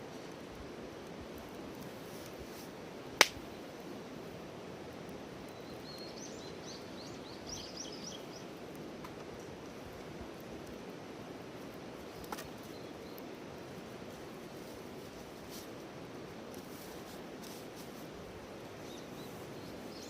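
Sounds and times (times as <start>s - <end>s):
fire hissing: 0.0s - 5.8s, 8.4s - 20.0s
campfire pop: 3.1s - 3.6s, 12.1s - 12.9s
bird chirping: 5.5s - 8.5s, 18.8s - 20.0s.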